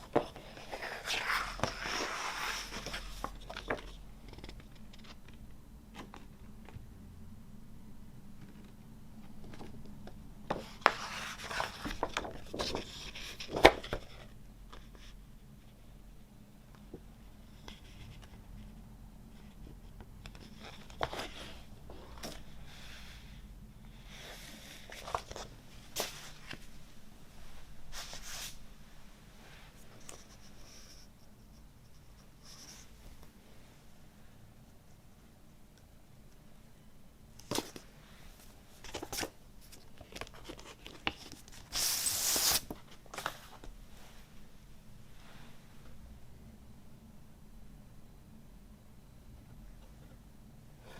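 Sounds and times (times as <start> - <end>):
paper and cardboard rustling: 10.5 - 14.3.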